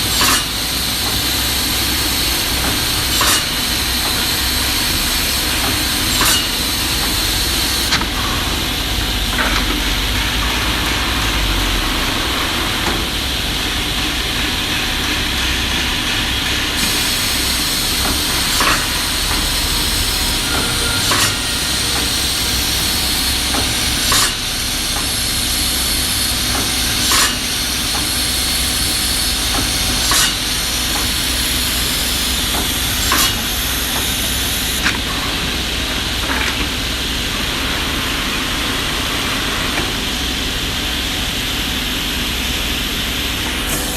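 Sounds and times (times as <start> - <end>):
woodworking machine hissing: 0.0 - 8.0, 16.6 - 34.8
sharp machine clack: 16.8 - 34.4.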